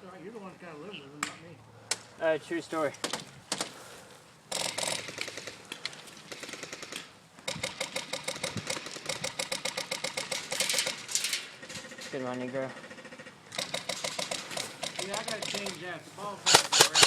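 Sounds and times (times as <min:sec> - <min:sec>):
rapid mechanical clicking: 0:04.5 - 0:11.0, 0:12.8 - 0:15.8, 0:16.5 - 0:17.0.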